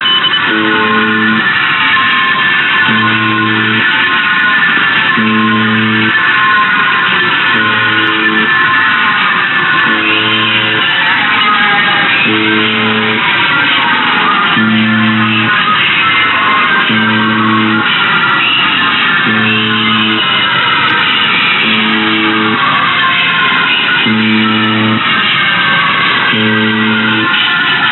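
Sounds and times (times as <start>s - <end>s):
distorted buzzer tone: 0.0s - 1.7s, 2.8s - 4.0s, 5.1s - 6.6s, 7.4s - 8.7s, 9.8s - 11.1s, 12.1s - 16.2s, 16.8s - 22.7s, 24.0s - 25.2s, 26.2s - 27.6s.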